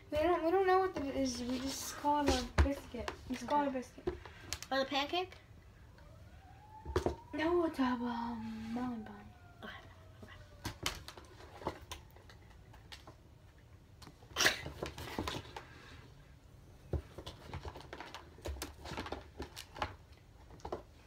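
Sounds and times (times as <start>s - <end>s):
handling rustles and knocks: 0.1s - 4.6s.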